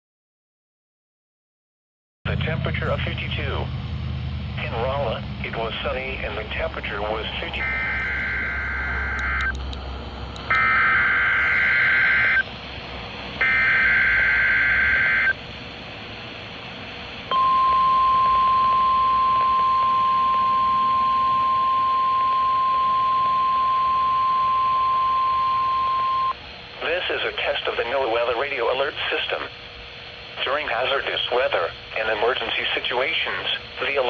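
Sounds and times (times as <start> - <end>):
steady warning alarm tone: 4.6 - 9.6, 10.3 - 15.4, 16.8 - 26.4
digital data bursts: 6.2 - 9.6, 10.5 - 12.4.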